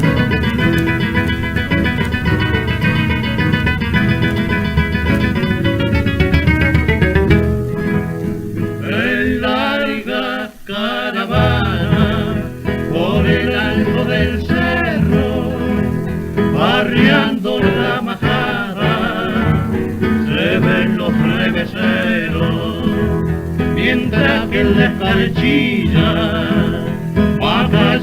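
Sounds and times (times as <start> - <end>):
acoustic guitars: 0.0 - 28.0
male vocal duet singing: 8.7 - 28.0.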